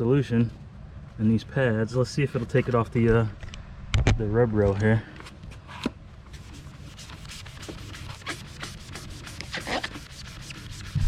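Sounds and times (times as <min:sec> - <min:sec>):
steady low hum: 0:02.8 - 0:11.0
eraser pad scrubbing rubber: 0:06.4 - 0:11.0.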